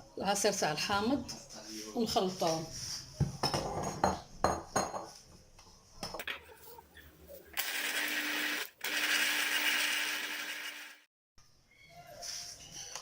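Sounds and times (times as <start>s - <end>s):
electric juicer motor humming: 7.6s - 11.1s.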